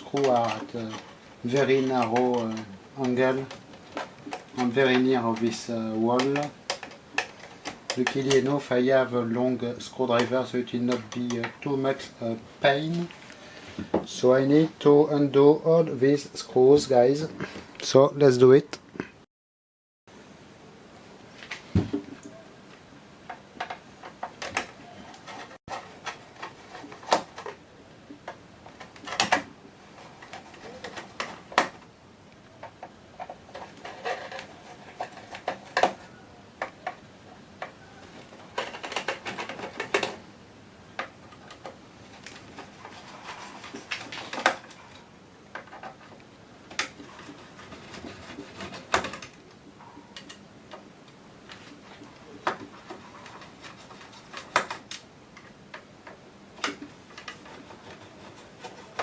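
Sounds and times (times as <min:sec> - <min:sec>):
screws scraping: 0:33.2 - 0:36.0, 0:46.8 - 0:49.3, 0:56.8 - 0:59.0.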